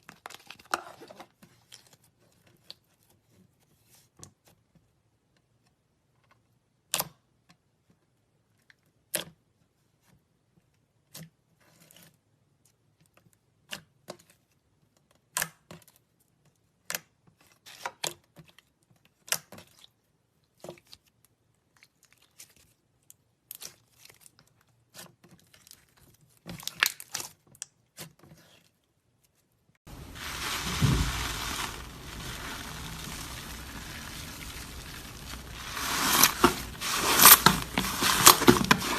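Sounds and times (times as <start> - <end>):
slime crackling and crinkling: 29.9 - 38.9.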